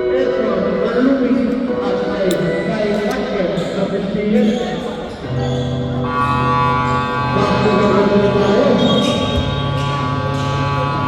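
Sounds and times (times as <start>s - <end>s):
music with long layered notes: 5.3s - 11.0s.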